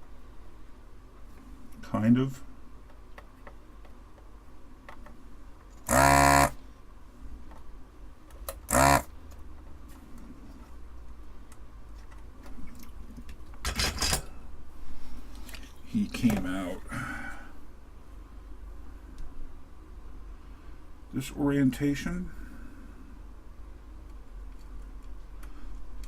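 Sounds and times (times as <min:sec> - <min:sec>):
desoldering pump buzzing: 0:05.8 - 0:06.6, 0:08.5 - 0:09.2.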